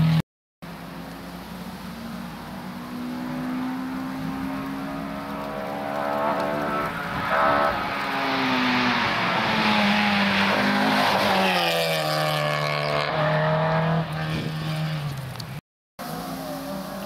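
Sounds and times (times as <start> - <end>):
rally car engine at high revs: 2.1 - 15.1.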